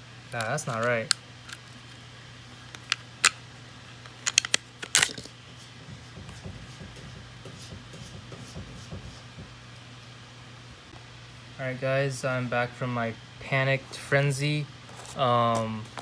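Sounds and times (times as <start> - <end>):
pistol action rattle: 2.7 - 3.4, 4.0 - 5.3.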